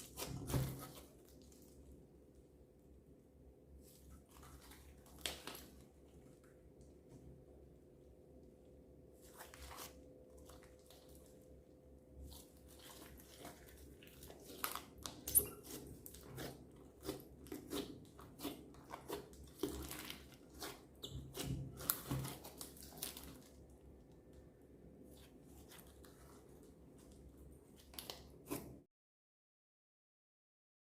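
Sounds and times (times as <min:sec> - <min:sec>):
hands squishing slime: 0:00.0 - 0:01.9, 0:03.8 - 0:06.2, 0:12.2 - 0:23.7.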